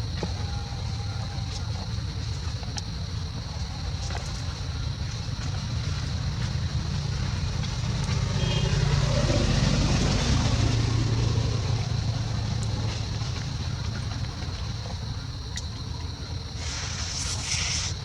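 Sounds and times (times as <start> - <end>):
motor vehicle passing by: 5.3 - 15.4.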